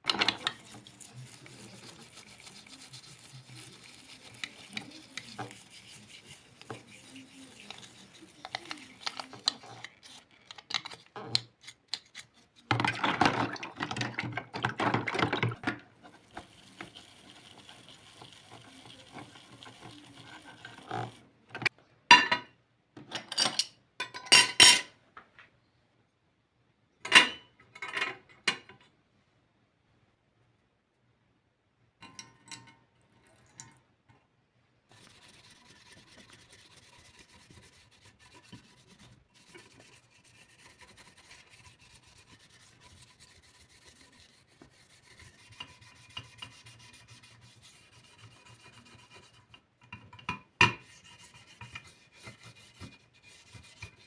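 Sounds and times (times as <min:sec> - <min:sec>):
small parts and tools handled: 0:00.0 - 0:21.7.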